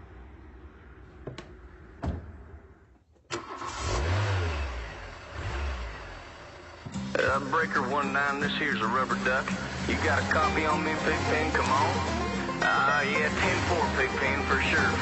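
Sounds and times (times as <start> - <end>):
engine starting and revving: 3.3 - 15.0.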